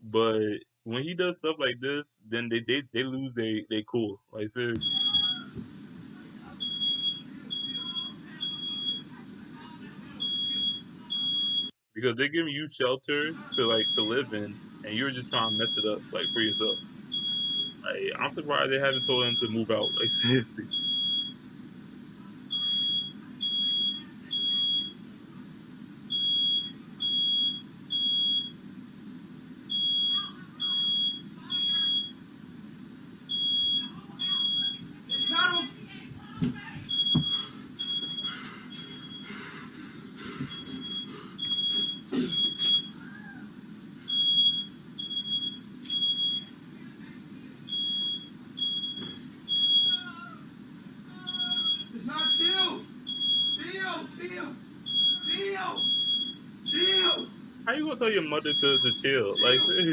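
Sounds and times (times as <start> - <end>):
smoke alarm beeping: 4.8 - 5.6, 6.6 - 9.2, 10.2 - 11.8, 13.4 - 21.4, 22.5 - 25.0, 26.1 - 28.6, 29.7 - 32.2, 33.3 - 35.8, 36.8 - 39.4, 40.3 - 43.0, 44.0 - 46.6, 47.6 - 50.1, 51.3 - 53.8, 54.8 - 57.4, 58.0 - 59.9.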